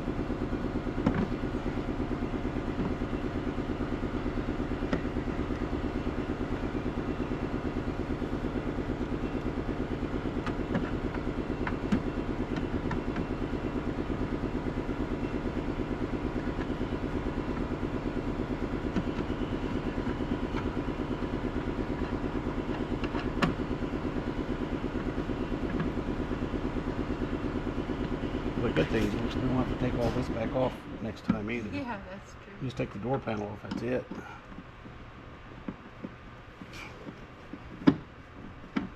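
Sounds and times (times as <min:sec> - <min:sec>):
engine idling: 0:00.0 - 0:38.9
light clicks and taps: 0:33.3 - 0:35.0.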